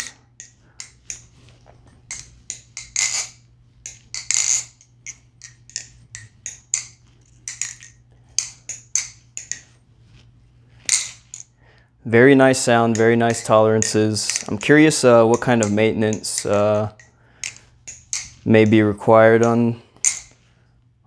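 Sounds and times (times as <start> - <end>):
steady low hum: 0.0 - 21.0
butterfly knife clacking: 12.9 - 18.4.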